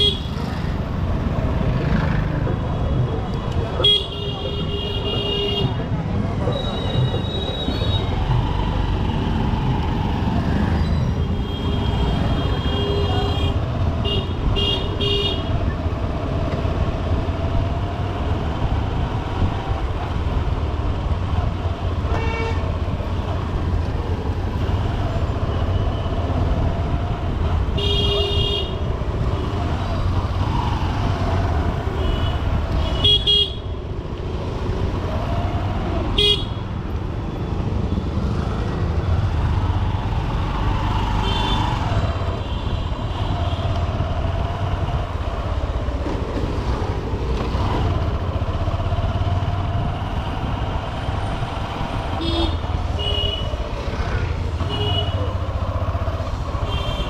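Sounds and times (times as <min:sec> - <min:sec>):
motorcycle engine and wind rumble: 0:05.6 - 0:57.0
vehicle horns honking: 0:36.2 - 0:36.6.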